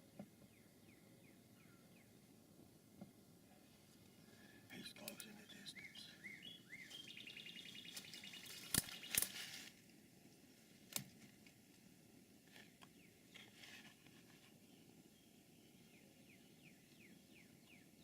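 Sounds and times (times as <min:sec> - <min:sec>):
songbirds chirping: 0:00.0 - 0:18.0
bird trill: 0:05.3 - 0:09.3
sharp clicks: 0:08.6 - 0:09.3.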